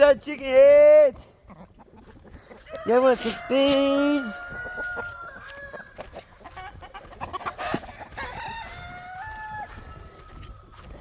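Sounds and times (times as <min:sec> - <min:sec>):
chickens clucking: 0:01.2 - 0:11.0
rooster crowing: 0:02.7 - 0:05.9, 0:08.1 - 0:10.5.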